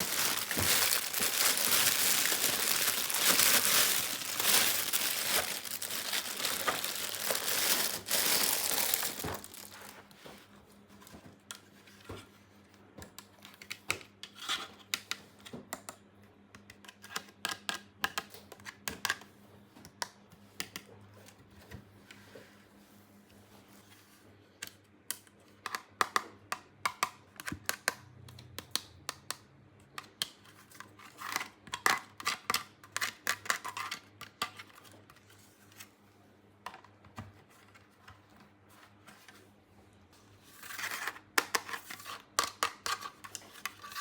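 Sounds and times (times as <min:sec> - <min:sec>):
plastic packaging crinkling and tearing: 0:00.0 - 0:10.2.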